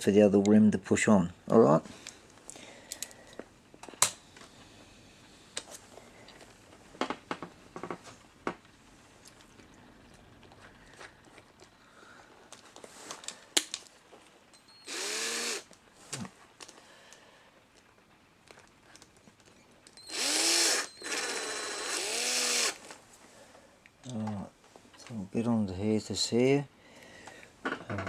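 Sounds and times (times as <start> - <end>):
electric drill motor whirring: 14.7 - 15.7, 20.0 - 22.9.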